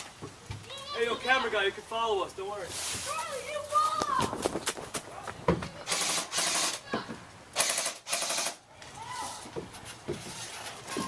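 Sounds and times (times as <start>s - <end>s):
airsoft guns firing bursts: 5.9s - 6.8s, 7.6s - 8.6s.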